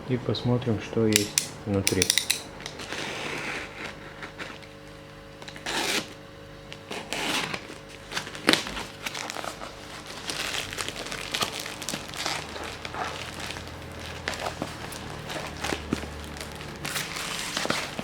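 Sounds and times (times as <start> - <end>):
packaging crinkling: 6.8 - 18.0.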